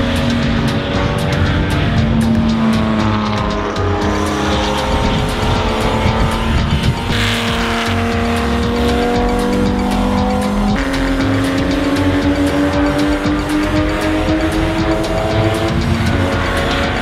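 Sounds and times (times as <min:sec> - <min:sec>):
race car engine running hard: 0:00.0 - 0:17.0.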